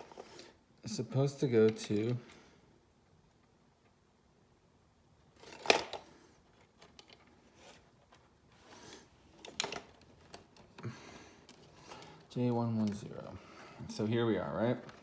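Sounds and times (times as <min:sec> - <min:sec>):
handling clicks and rustles: 0:05.3 - 0:15.0.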